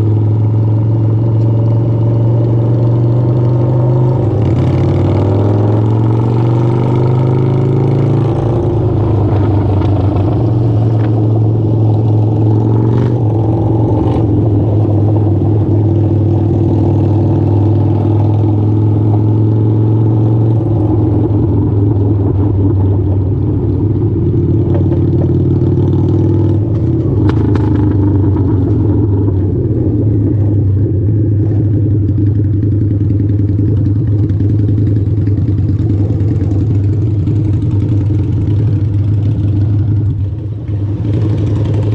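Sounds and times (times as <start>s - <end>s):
motorcycle engine idling: 26.8s - 41.9s.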